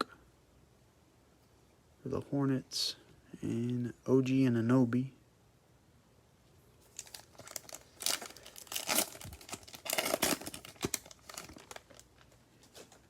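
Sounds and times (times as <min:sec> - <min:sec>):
foil wrapper tearing and crinkling: 0:06.9 - 0:13.0.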